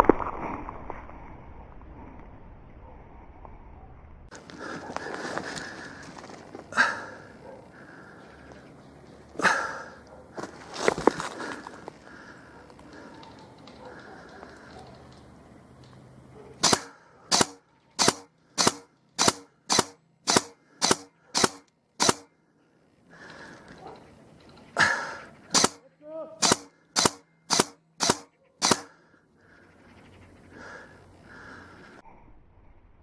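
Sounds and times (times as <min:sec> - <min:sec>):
airsoft gun shots: 0:16.6 - 0:22.3, 0:25.5 - 0:25.8, 0:26.4 - 0:28.9.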